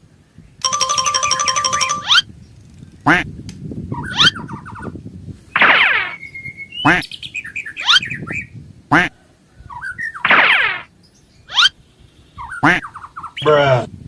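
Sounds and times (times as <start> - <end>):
bird harsh squawks: 5.6 - 6.2, 9.7 - 10.9, 11.5 - 11.8, 12.4 - 13.5.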